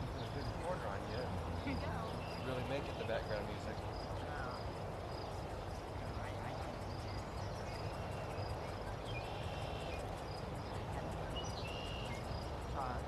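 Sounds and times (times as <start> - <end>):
faint indistinct voices: 0.0 - 13.0
steady background noise: 0.0 - 13.0
bird chirps: 11.3 - 12.4.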